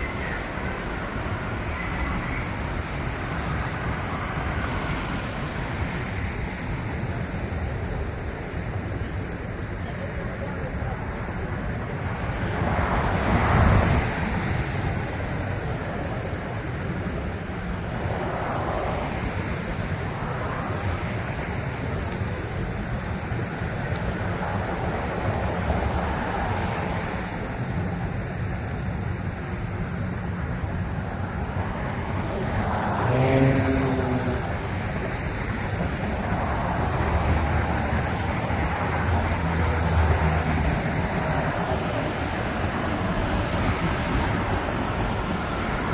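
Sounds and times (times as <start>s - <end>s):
road traffic passing: 0.0s - 45.9s
loud vehicle passing: 31.6s - 45.9s.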